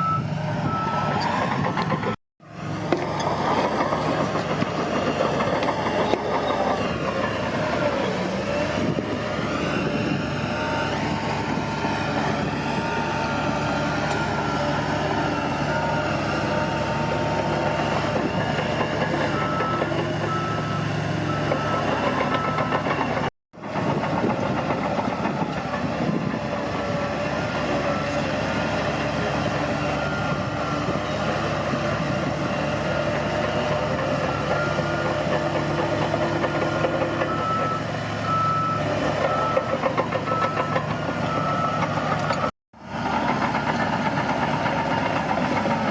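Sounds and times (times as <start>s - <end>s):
reversing alarm beeping: 0.0s - 1.2s, 19.0s - 23.2s, 29.2s - 31.4s, 36.6s - 42.5s
diesel engine running: 0.0s - 45.9s.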